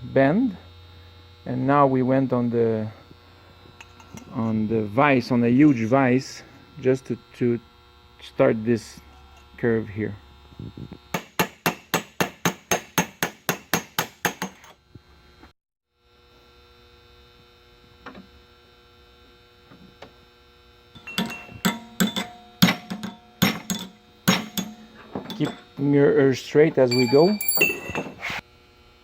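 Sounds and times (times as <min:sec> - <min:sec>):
steady electrical hum: 0:00.0 - 0:29.0
hammer striking metal strip: 0:11.2 - 0:14.7, 0:21.0 - 0:25.7.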